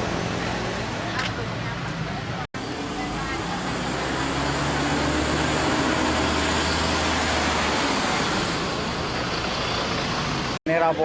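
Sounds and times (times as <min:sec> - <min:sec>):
vehicle engine and road noise: 0:00.0 - 0:11.0.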